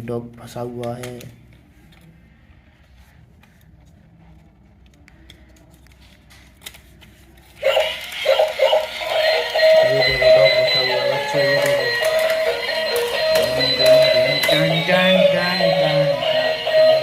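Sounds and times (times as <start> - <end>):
electronic toy tune: 7.6 - 17.0
toy clicks and rattles: 7.6 - 17.0.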